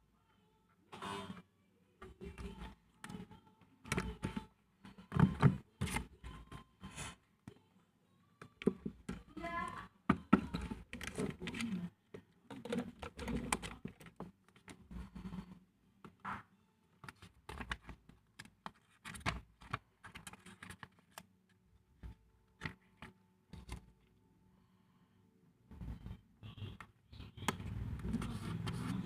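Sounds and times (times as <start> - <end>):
paper and stationery rustling: 8.6 - 11.9, 12.5 - 24.0, 27.6 - 29.0.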